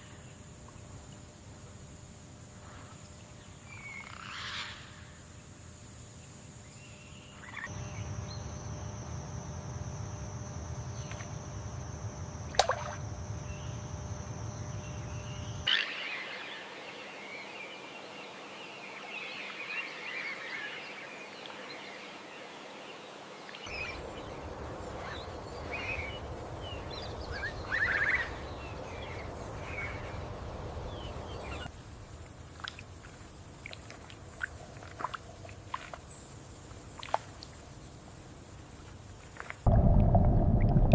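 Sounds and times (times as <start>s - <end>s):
steady low rumble: 23.9s - 27.7s, 39.7s - 40.9s.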